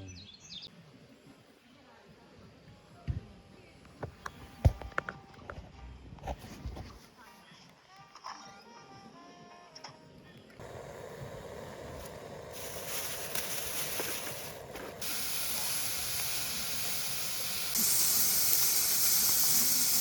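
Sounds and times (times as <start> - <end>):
steady rushing hiss: 10.6 - 20.0.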